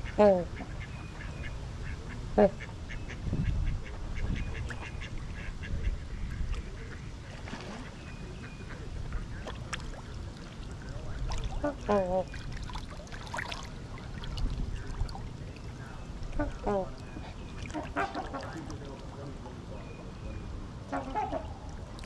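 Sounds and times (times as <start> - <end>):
faint high flock calls: 20.9 - 21.7.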